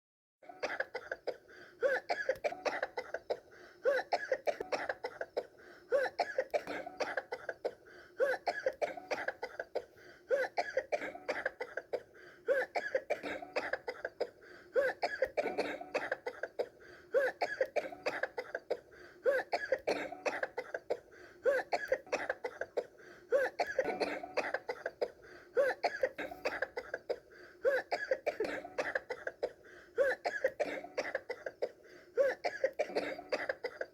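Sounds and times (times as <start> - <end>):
person coughing: 0.6 - 33.9.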